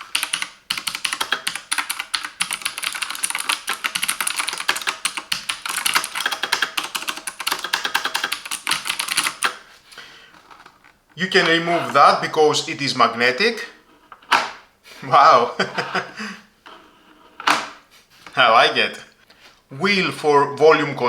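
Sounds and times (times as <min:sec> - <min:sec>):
rapid keyboard typing: 0:00.0 - 0:09.6.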